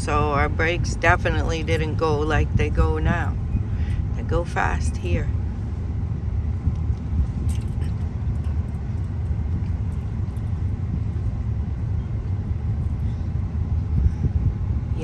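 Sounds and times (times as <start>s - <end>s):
car engine and tyres rumbling: 0.0s - 15.0s
light clicks or rattles: 1.0s - 4.2s, 6.6s - 13.2s.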